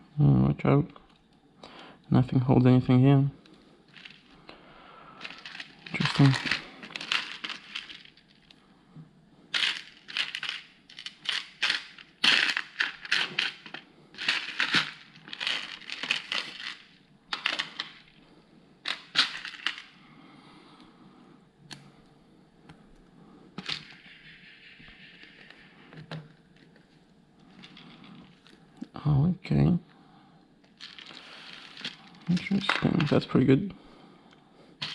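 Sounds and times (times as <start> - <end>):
plastic pieces rattling: 3.9 - 4.3, 5.2 - 8.5, 9.5 - 18.2, 18.8 - 20.0, 23.6 - 24.1, 27.5 - 28.5, 30.7 - 33.3.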